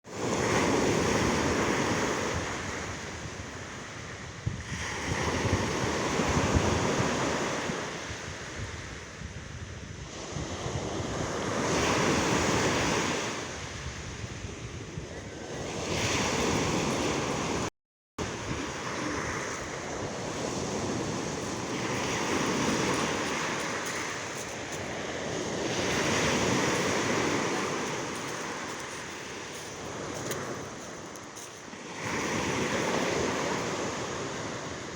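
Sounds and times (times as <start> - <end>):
sea waves breaking: 14.5 - 34.9.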